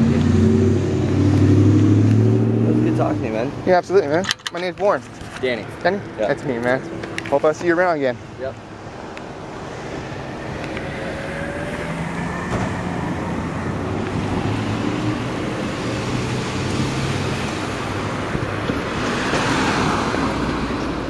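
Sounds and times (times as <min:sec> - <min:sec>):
vehicle passing close by: 0:00.0 - 0:03.5, 0:09.6 - 0:21.0.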